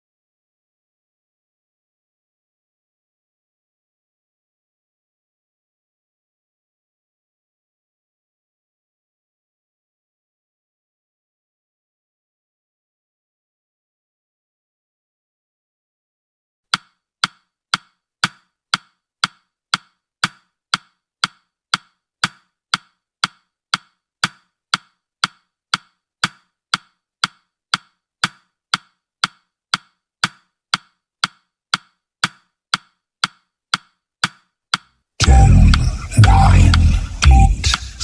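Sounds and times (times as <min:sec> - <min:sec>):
timer ticking clicks: 0:16.8 - 0:38.0.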